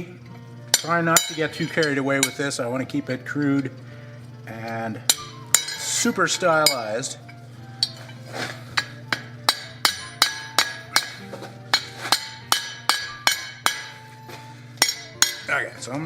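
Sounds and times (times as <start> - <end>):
hammer blows on steel: 5.1 - 7.2, 7.8 - 15.7.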